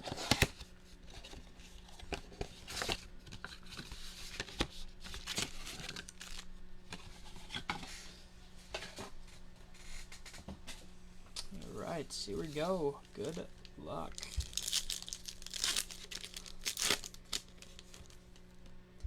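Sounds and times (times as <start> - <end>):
packaging crinkling and tearing: 0.0 - 7.6, 11.4 - 18.7.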